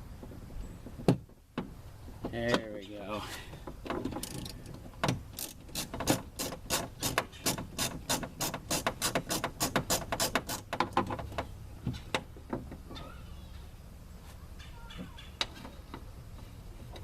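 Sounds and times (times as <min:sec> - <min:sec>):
ratchet clicking: 0:04.2 - 0:04.6, 0:05.3 - 0:11.0.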